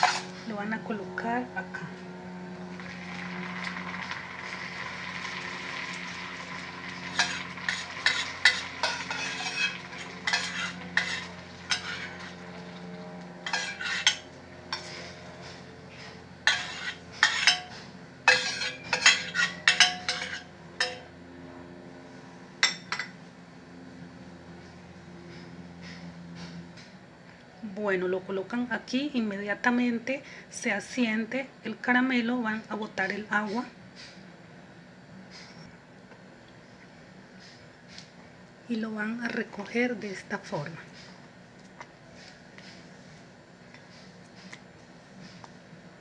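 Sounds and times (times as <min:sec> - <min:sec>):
spoon scraping a pan: 0:00.0 - 0:00.4, 0:06.9 - 0:21.1.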